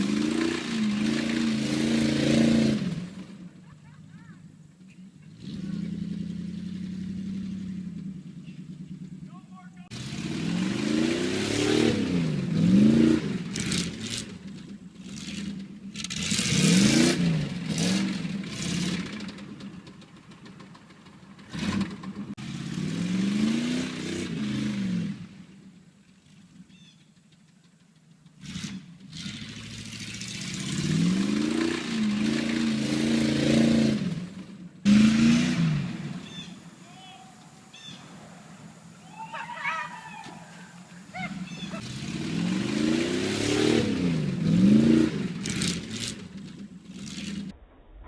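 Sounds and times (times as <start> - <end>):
van engine revving: 0.0 - 47.6
rushing noise: 34.9 - 44.6.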